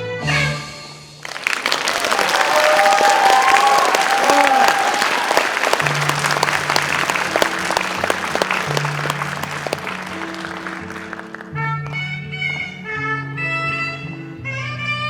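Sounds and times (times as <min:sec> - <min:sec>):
audience applauding: 0:01.2 - 0:12.6.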